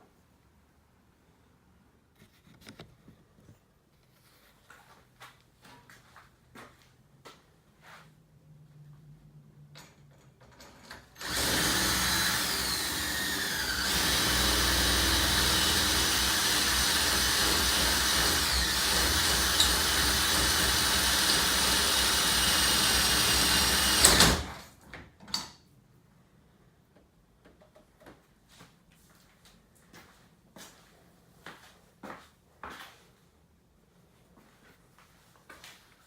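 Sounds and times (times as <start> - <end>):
electric drill boring into metal: 11.2 - 24.6.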